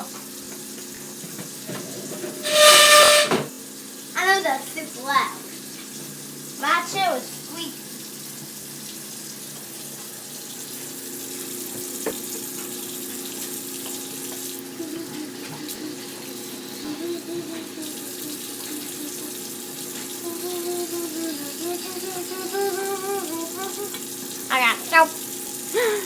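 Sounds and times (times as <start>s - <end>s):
tap water splashing into sink: 0.0s - 3.6s, 5.2s - 20.2s.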